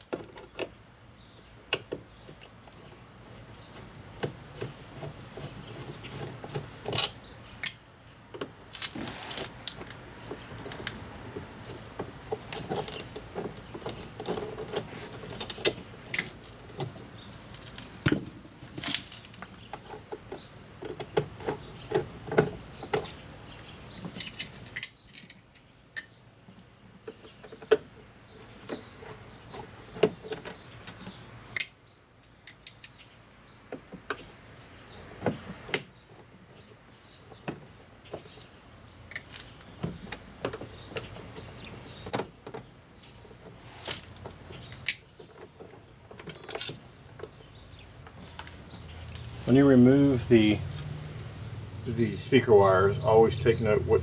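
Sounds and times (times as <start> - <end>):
hand tools clicking and clattering: 43.4 - 47.5.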